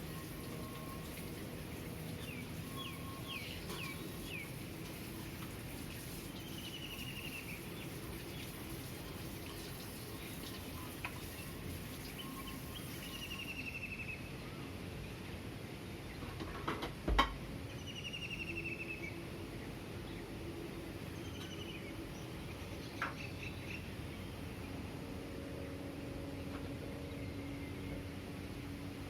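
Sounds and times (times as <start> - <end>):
birds chirping: 0.0 - 14.2
low city hum: 0.0 - 29.0.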